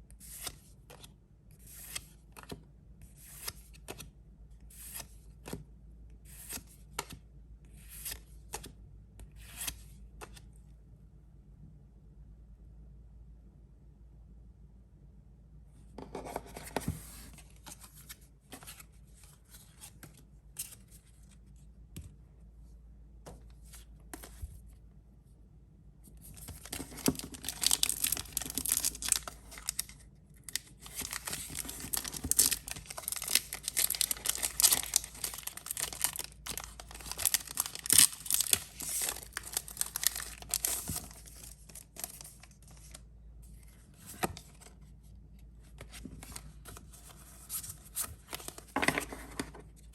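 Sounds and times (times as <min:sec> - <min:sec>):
packaging tearing and crinkling: 0:26.5 - 0:30.0, 0:30.6 - 0:42.2.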